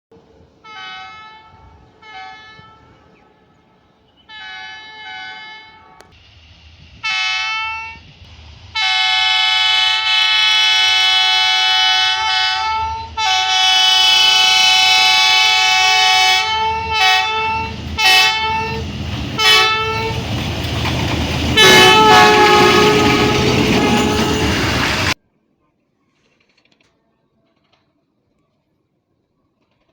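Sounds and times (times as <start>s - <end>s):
train horn blasts: 0.6s - 6.2s, 7.0s - 8.1s, 8.8s - 20.3s, 21.4s - 25.2s
train rumble: 5.4s - 25.2s.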